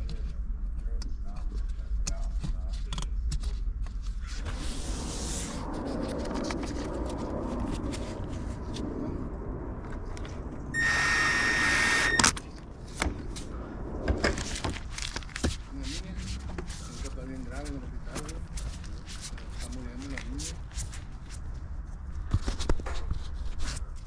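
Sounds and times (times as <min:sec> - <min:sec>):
low rumble: 0:04.4 - 0:20.4
high-pitched electronic beep: 0:10.8 - 0:12.2.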